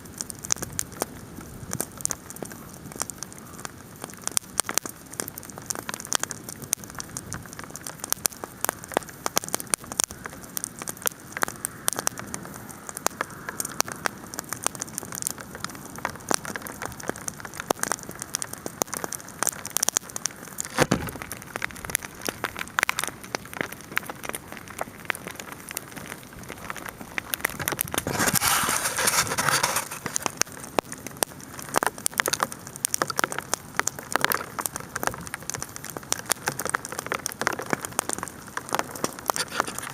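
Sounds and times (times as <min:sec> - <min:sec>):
bonfire crackling: 0:00.0 - 0:39.9
hail falling: 0:15.6 - 0:39.9.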